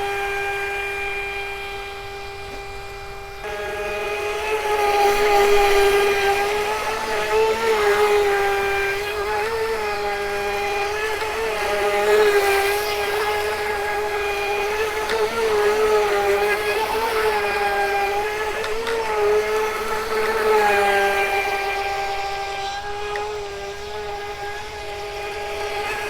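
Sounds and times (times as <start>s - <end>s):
rc boat electric motor whining: 0.0s - 26.0s.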